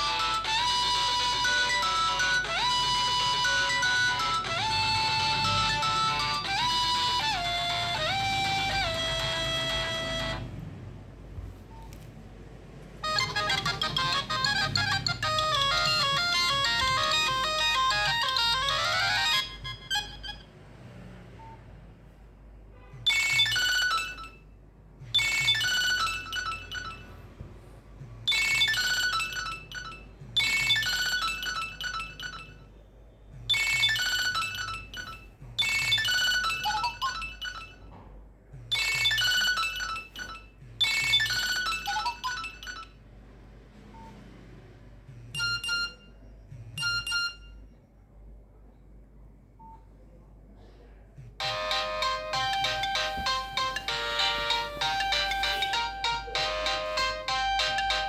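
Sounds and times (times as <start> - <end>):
electronic ringtone melody: 0.0 - 10.6, 13.0 - 20.6, 23.1 - 24.4, 25.2 - 27.2, 28.3 - 32.7, 33.5 - 37.8, 38.7 - 43.0, 45.4 - 47.6, 51.4 - 58.0.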